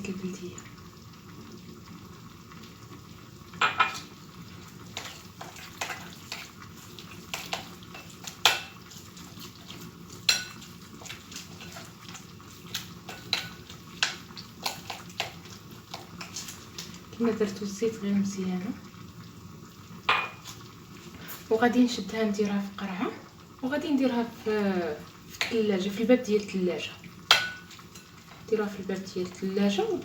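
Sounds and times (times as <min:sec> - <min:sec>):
spoon clinking and scraping a dish: 0:07.3 - 0:11.9, 0:12.7 - 0:16.6, 0:27.3 - 0:28.4.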